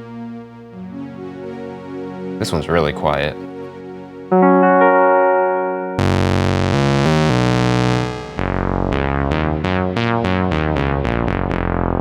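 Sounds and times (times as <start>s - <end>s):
synthesizer held chord: 0.1s - 9.7s
bright sustained synth patch: 4.3s - 8.5s
plucked synth notes: 4.3s - 12.0s
stepping synth bass line: 4.3s - 12.0s.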